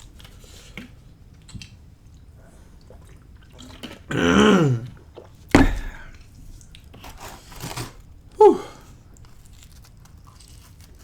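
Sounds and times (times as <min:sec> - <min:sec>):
wet mouth eating sounds: 0:02.5 - 0:06.8
man's wordless vocal sound: 0:04.1 - 0:04.9, 0:05.6 - 0:06.2.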